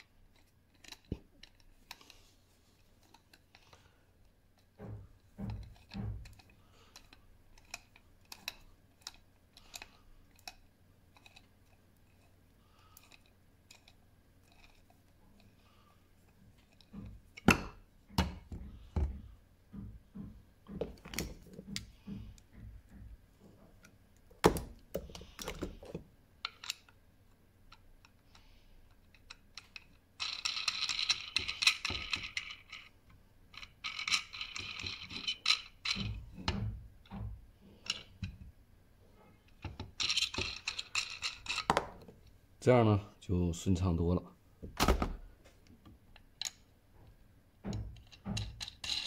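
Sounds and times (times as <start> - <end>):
metal parts knocking and clicking: 0.3 - 2.3, 4.6 - 15.6, 19.8 - 27.0, 27.7 - 38.4, 39.5 - 42.3, 47.7 - 49.0.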